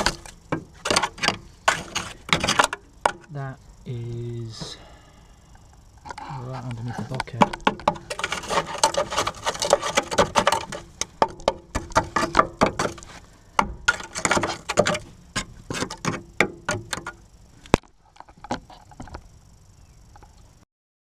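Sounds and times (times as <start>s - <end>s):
metal clicking and knocking: 7.1s - 17.2s.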